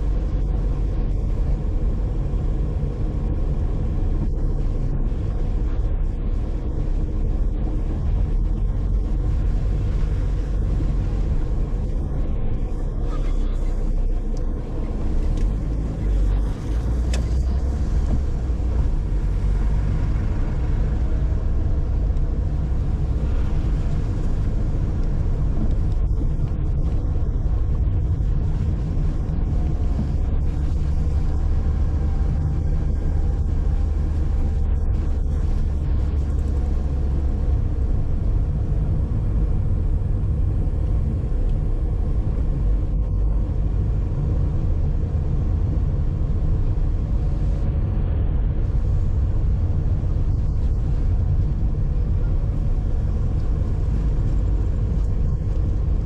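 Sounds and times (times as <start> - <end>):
car engine rumble: 0.0 - 56.0.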